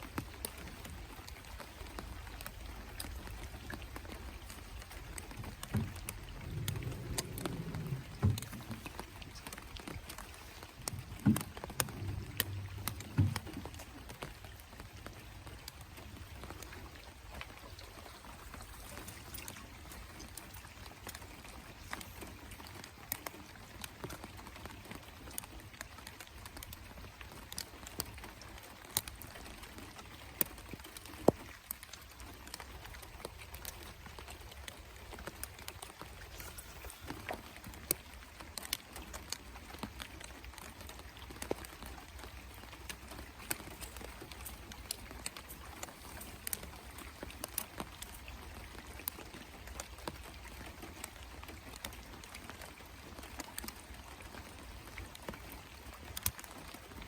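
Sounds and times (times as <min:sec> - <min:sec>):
raindrops ticking: 0:00.0 - 0:57.0
low steady rumble: 0:02.8 - 0:16.7.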